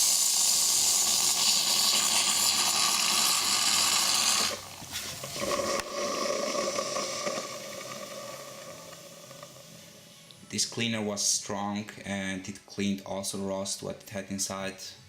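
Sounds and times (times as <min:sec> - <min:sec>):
coffee machine water pump: 0:00.0 - 0:10.3
loud hiss of water: 0:00.0 - 0:10.3.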